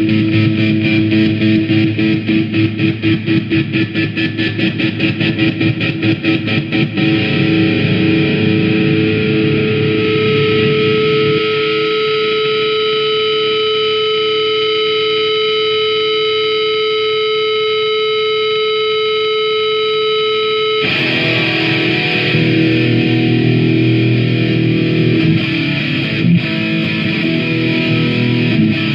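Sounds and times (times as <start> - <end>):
distorted electric guitar: 0.0 - 28.9.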